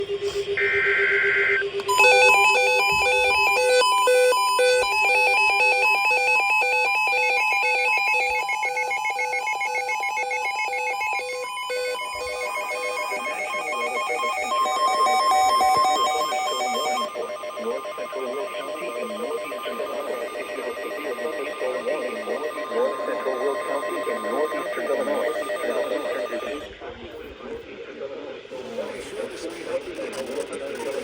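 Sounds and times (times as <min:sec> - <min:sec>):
electronic alert beeps: 0:11.7 - 0:26.7.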